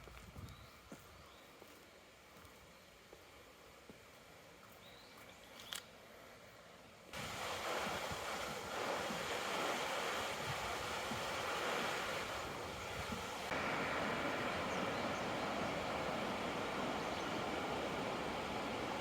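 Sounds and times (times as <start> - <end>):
river rushing over rocks: 7.2 - 19.0.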